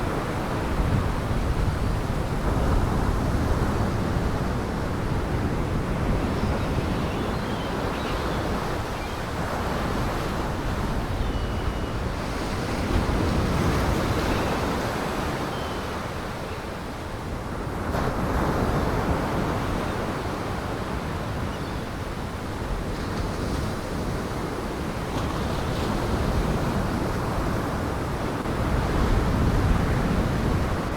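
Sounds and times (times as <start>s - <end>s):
wind buffeting microphone: 0.0s - 15.0s
gale-force wind roaring: 0.0s - 16.4s, 22.3s - 30.9s.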